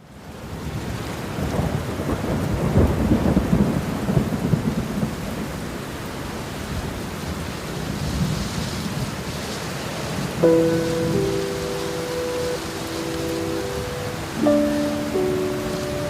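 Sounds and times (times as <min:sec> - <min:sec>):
heavy rain: 0:00.0 - 0:16.0
thunder rumbling: 0:10.4 - 0:16.0.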